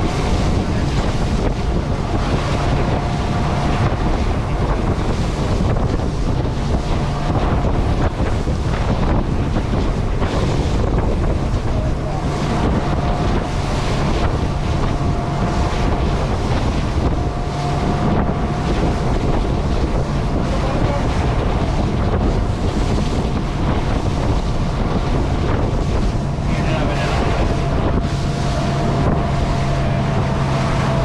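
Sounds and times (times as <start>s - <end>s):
outboard engine droning: 0.0s - 31.0s
waves washing against boat: 0.0s - 31.0s
wind buffeting microphone: 0.0s - 31.0s.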